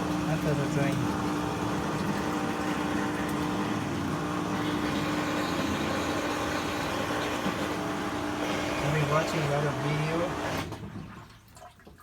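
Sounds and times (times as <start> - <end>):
washing machine drain pump humming: 0.0 - 11.3.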